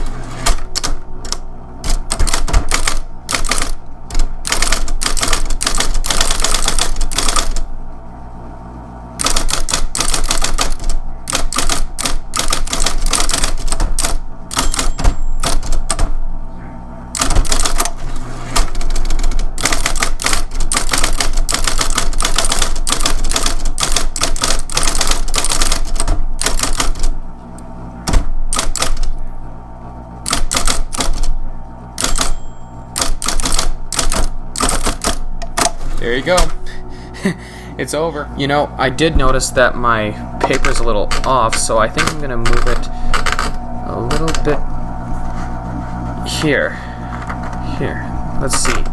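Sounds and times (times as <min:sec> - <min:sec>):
typewriter motor hum: 0:00.0 - 0:08.0, 0:09.1 - 0:16.3, 0:17.1 - 0:29.4, 0:30.2 - 0:37.4, 0:38.8 - 0:48.9
typewriter key strikes: 0:00.4 - 0:07.6, 0:09.2 - 0:16.1, 0:17.2 - 0:18.0, 0:18.6 - 0:27.1, 0:28.1 - 0:29.1, 0:30.3 - 0:31.3, 0:32.0 - 0:35.8.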